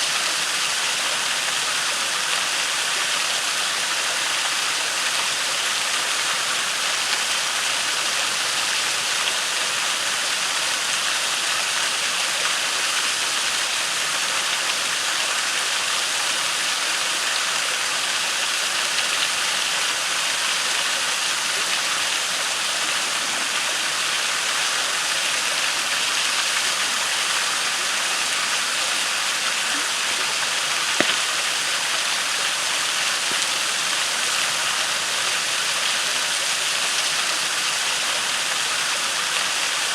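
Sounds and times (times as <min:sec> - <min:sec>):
waterfall rushing: 0:00.0 - 0:39.9
campfire crackling pops: 0:30.9 - 0:31.7.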